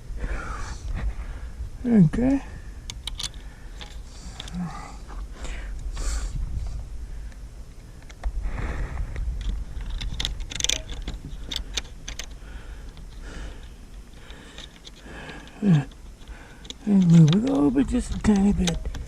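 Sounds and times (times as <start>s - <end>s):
low rumble: 0.0s - 14.3s
small metal hardware clicking: 2.9s - 4.6s, 9.4s - 13.2s, 14.2s - 19.0s.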